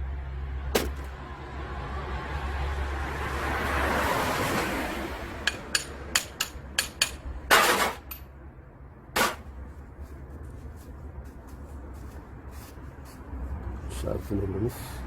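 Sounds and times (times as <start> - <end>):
scraping metal knock: 5.4 - 8.2.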